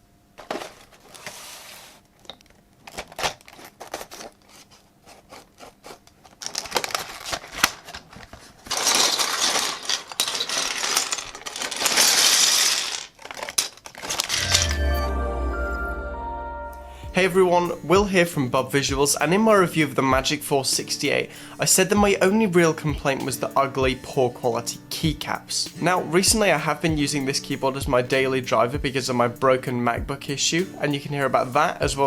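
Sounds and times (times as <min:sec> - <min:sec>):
plastic keycaps clattering: 0:06.4 - 0:14.6.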